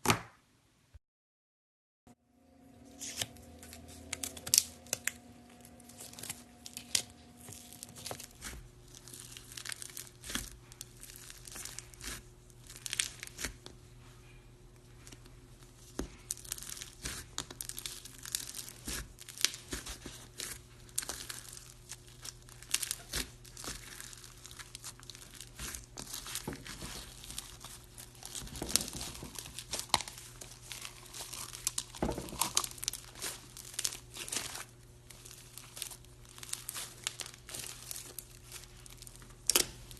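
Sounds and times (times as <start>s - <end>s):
slime crackling and popping: 3.0s - 13.7s, 15.8s - 39.9s.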